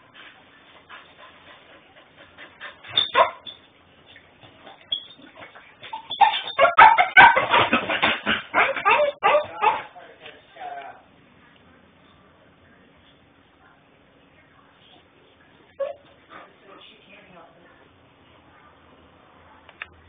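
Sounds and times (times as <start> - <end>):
puppy whining and yipping: 4.9 - 7.5.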